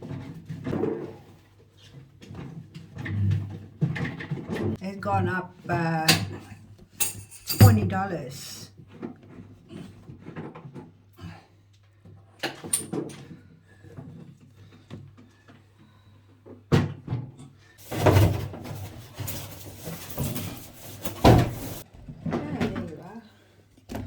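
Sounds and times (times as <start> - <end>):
rustling clatter: 17.8 - 21.9.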